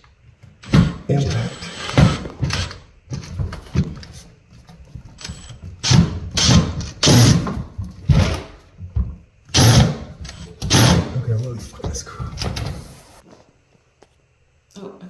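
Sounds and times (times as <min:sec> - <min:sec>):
impact driver driving screw: 0:00.6 - 0:03.3, 0:05.2 - 0:08.5, 0:09.5 - 0:11.2.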